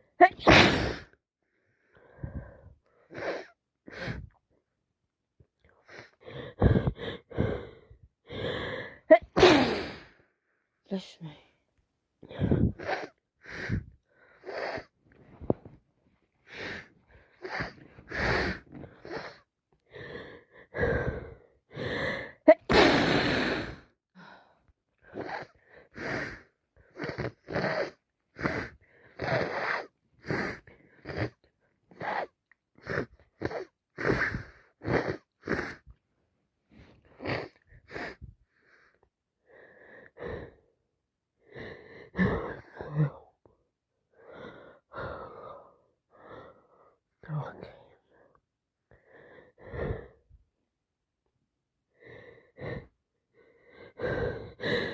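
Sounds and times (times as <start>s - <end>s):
woman sneezing: 0.2s - 1.1s, 9.1s - 10.0s, 22.5s - 23.2s.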